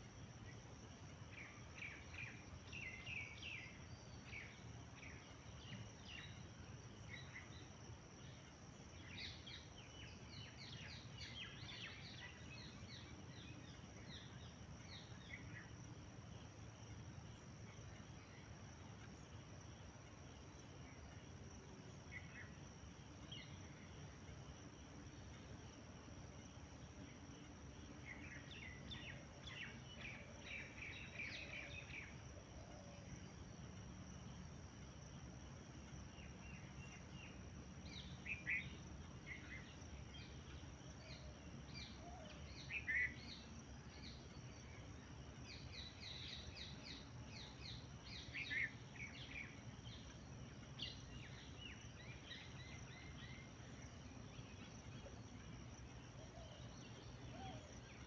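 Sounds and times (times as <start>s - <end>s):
birds chirping: 17.0s - 58.0s.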